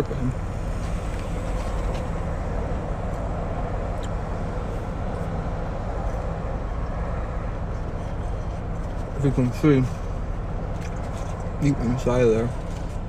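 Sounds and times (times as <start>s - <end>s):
air-conditioning fan blowing: 0.0s - 13.0s.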